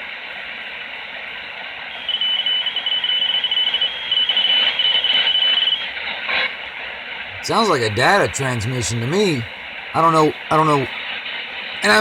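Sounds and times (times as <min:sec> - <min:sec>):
radio hiss: 0:07.4 - 0:10.9.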